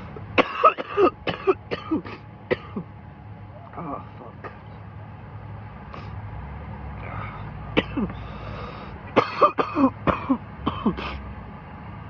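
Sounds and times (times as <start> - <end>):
man coughing: 0.4 - 2.9, 7.8 - 8.2, 9.2 - 11.2.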